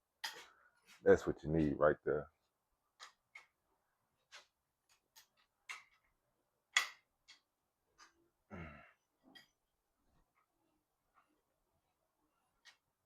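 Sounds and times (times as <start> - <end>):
hand tools clicking and tapping: 0.2 - 1.0, 4.2 - 8.2.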